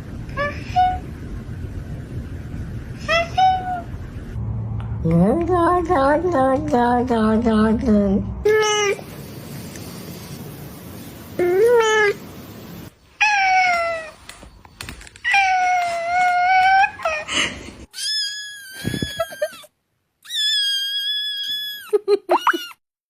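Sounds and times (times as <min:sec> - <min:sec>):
cats meowing: 0:17.9 - 0:19.6.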